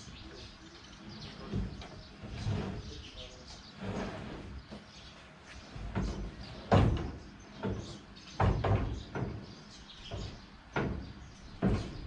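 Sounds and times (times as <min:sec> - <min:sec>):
hard knocks and thuds: 0:06.0 - 0:09.4, 0:10.1 - 0:12.0.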